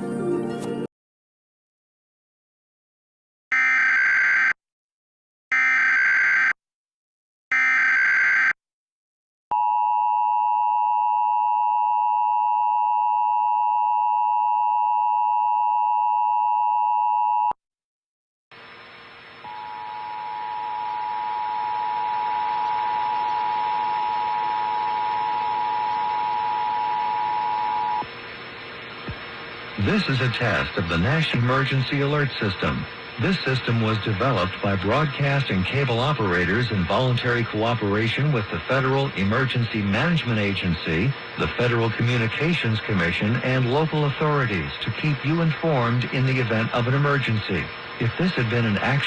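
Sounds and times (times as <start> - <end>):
faint steady tone: 18.6 - 35.3.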